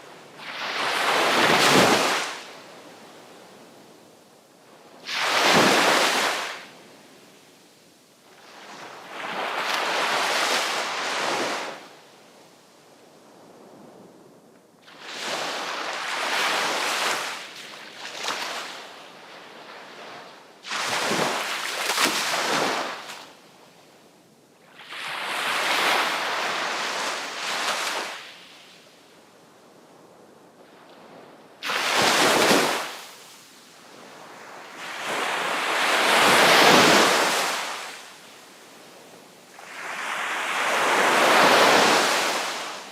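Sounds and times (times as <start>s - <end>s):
waves crashing on shore: 0.0s - 2.5s, 5.0s - 6.7s, 14.9s - 19.0s, 20.6s - 23.4s, 24.8s - 28.5s, 31.6s - 42.9s
surf washing: 31.6s - 42.9s.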